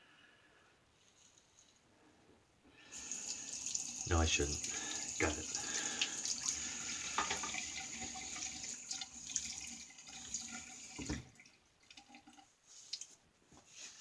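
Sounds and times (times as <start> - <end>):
tap water splashing into basin: 3.0 - 13.1
tap shutting off knock: 7.2 - 7.6, 11.0 - 11.3.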